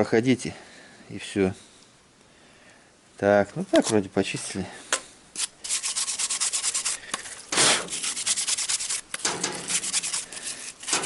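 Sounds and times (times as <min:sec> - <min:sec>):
rubbing strokes on fan motor: 0:05.4 - 0:11.0.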